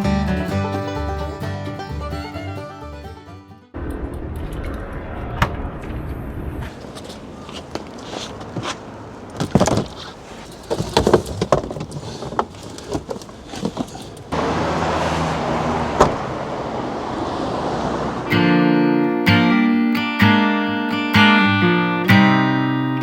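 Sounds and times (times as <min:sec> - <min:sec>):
bicycle knocking and rattling: 0:06.8 - 0:14.4.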